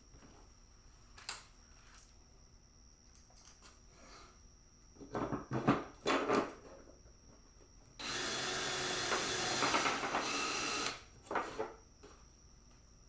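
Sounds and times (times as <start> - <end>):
cordless drill driving screw: 8.0 - 11.0.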